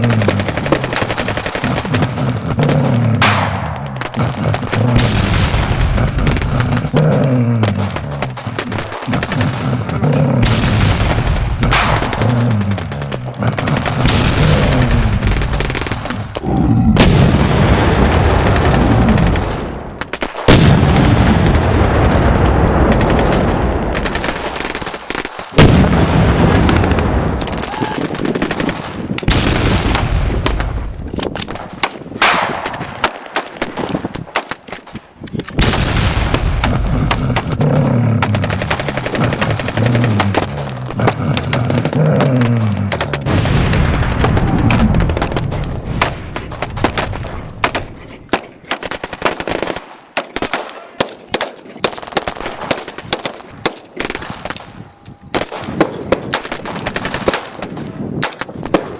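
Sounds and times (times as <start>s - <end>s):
machine-gun bursts: 0.0s - 3.3s, 35.6s - 54.6s
booms: 0.0s - 58.9s.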